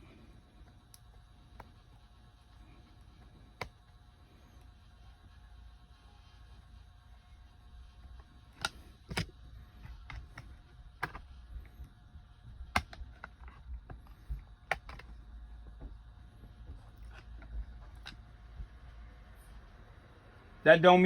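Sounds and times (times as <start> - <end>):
faint low hum: 0.0 - 21.0
plastic parts and tools clicking: 3.5 - 3.9, 8.1 - 11.9, 12.5 - 15.8, 16.6 - 18.4.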